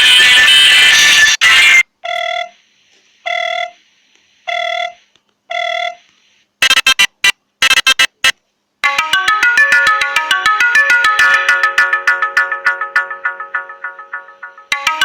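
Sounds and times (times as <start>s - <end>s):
electronic ringtone beeps: 6.6s - 15.0s
musical ringtone: 8.8s - 15.0s
ringtone short loud notes: 8.8s - 15.0s.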